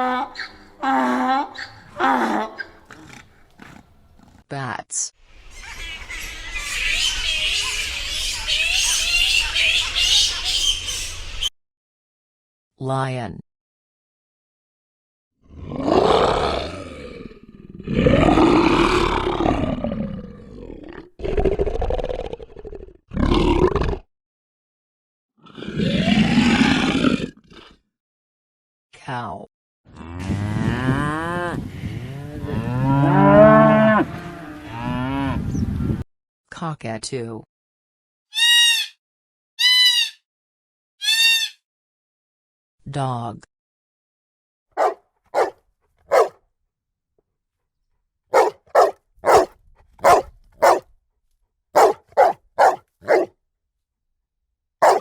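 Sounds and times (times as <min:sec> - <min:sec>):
cow mooing: 0:44.8 - 0:45.5, 0:46.1 - 0:46.3, 0:48.4 - 0:50.8, 0:51.8 - 0:53.3
dog barking: 0:44.8 - 0:46.4, 0:48.3 - 0:50.8, 0:51.8 - 0:53.3.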